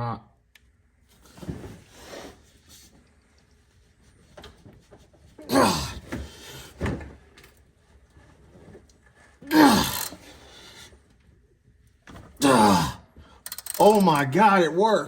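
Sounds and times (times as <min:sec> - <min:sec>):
man grunting with effort: 0:05.4 - 0:06.1, 0:09.4 - 0:10.3, 0:12.4 - 0:13.1.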